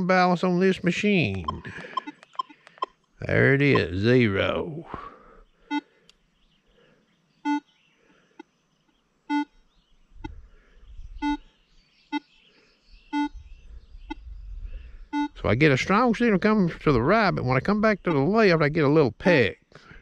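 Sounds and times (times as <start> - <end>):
metal detector beeps: 1.2 - 3.0, 3.7 - 4.0, 7.4 - 7.7, 9.3 - 9.6, 11.2 - 11.5, 13.1 - 13.5, 15.1 - 15.4.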